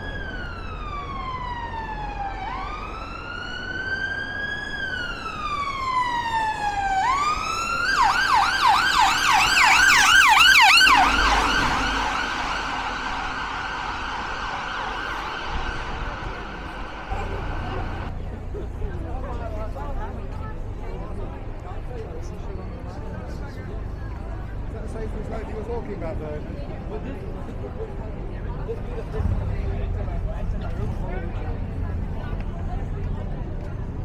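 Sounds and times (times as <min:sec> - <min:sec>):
emergency siren wailing and yelping: 0:00.0 - 0:18.1.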